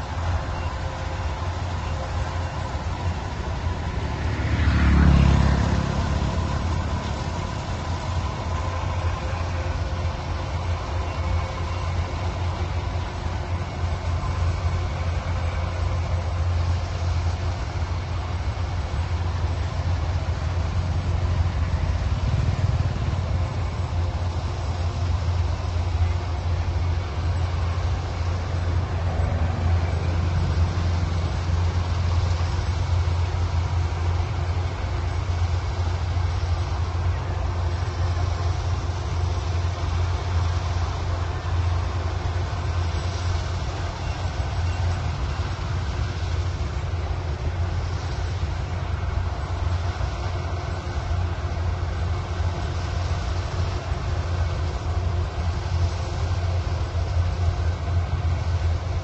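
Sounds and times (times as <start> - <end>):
heavy machinery engine humming: 0.0 - 59.0.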